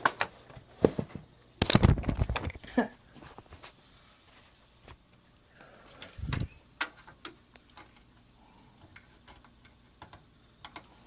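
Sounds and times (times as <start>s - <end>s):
computer hardware clicks and taps: 6.0s - 8.1s, 8.8s - 11.0s.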